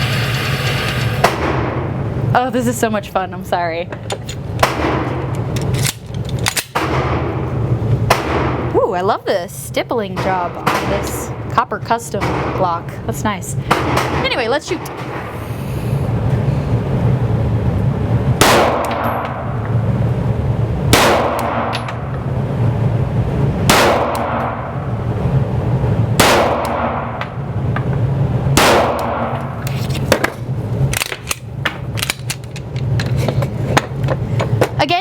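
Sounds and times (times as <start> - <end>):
steady low hum: 0.0 - 35.0
pistol shots echoing indoors: 18.4 - 19.6, 20.9 - 22.0, 23.7 - 24.8, 26.2 - 27.3, 28.6 - 29.5.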